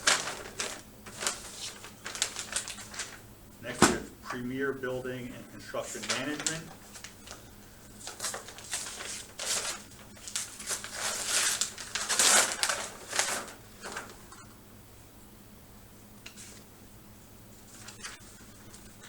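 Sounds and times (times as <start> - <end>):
paper rustling and crinkling: 0.0 - 4.1, 5.7 - 14.2, 16.3 - 16.7, 17.6 - 19.0.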